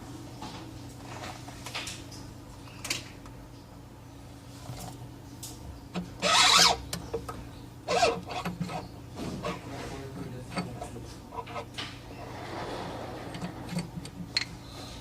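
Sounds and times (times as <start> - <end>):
steady low hum: 0.0 - 15.0
objects rubbing and scraping: 7.9 - 15.0.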